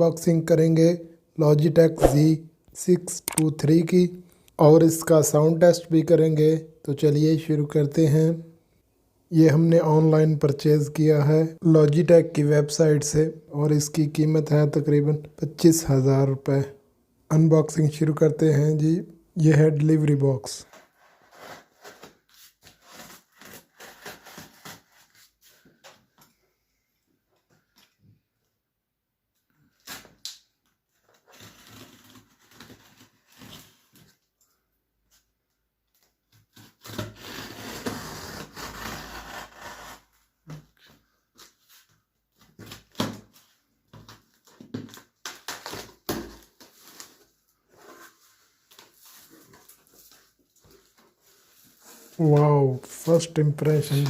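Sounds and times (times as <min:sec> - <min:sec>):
cardboard tearing: 0:20.9 - 0:25.4, 0:36.5 - 0:40.2.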